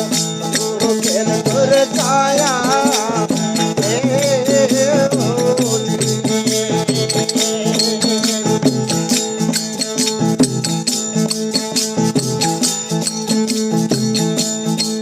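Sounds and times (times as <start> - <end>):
jingling percussion beat: 0.0 - 15.0
sustained melodic instruments: 0.0 - 15.0.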